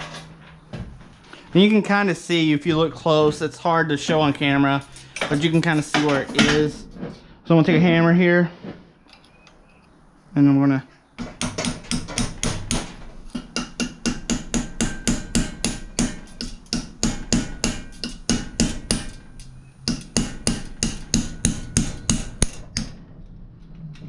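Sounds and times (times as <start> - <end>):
hammer striking metal chisel: 11.2 - 23.0.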